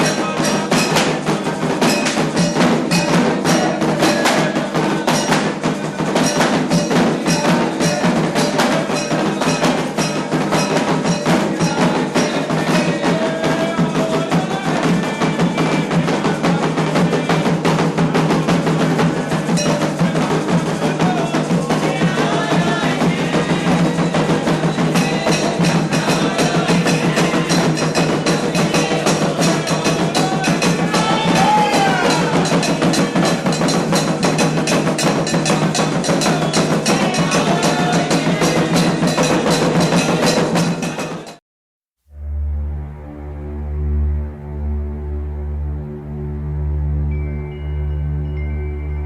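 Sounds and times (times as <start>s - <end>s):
hand drums: 0.0s - 41.4s
voices singing: 0.0s - 41.4s
struck metal bell: 1.8s - 13.0s, 19.5s - 20.4s.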